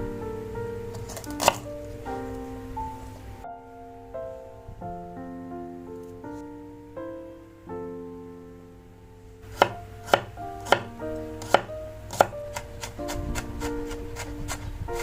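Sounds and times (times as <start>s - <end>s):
soft piano music: 0.0s - 15.0s
knife chopping on cutting board: 1.1s - 1.6s, 9.5s - 15.0s.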